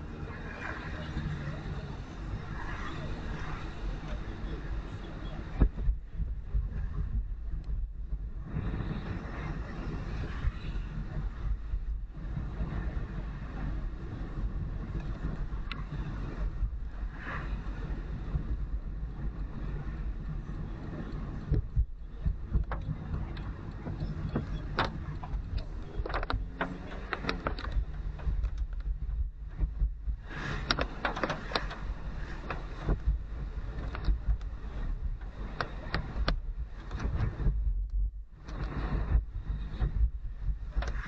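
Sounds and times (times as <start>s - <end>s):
tyre noise on wet road: 0.0s - 41.0s.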